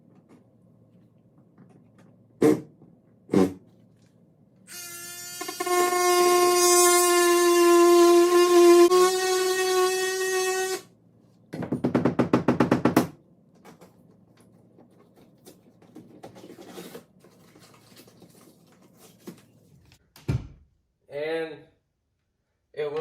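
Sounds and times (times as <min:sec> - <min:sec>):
power tool high whine: 0:04.7 - 0:10.8.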